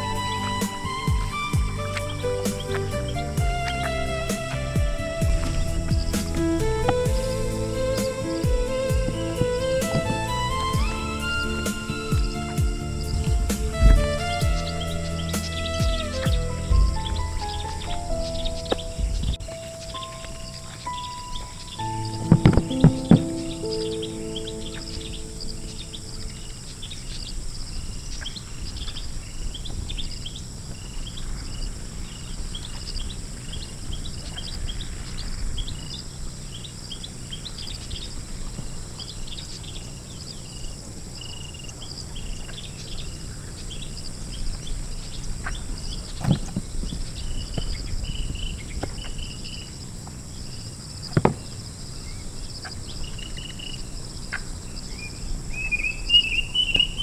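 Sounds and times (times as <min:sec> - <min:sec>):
low background rumble: 0:00.0 - 0:20.7
bird chirps: 0:00.0 - 0:57.0
high insect drone: 0:00.0 - 0:57.0.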